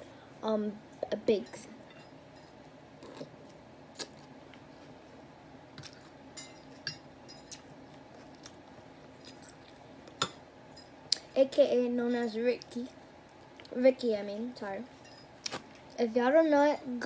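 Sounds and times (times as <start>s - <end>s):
person chewing food: 3.0s - 5.0s, 5.8s - 6.2s, 7.4s - 10.4s.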